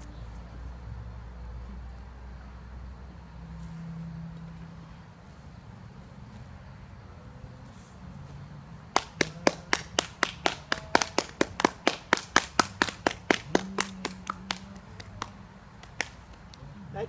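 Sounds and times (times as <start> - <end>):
hand clapping: 8.9 - 16.6.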